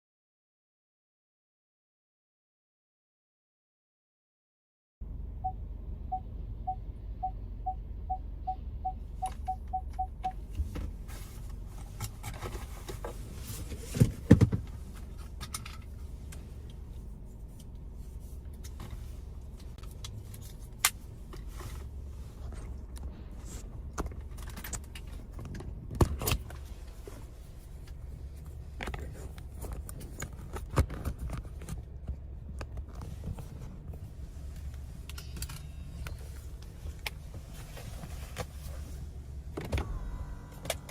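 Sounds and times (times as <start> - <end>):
short beeps: 5.4 - 10.4.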